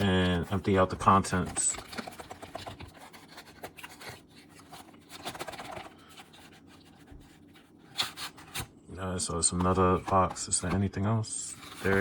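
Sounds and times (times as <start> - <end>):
cardboard package being opened: 0.0 - 8.7.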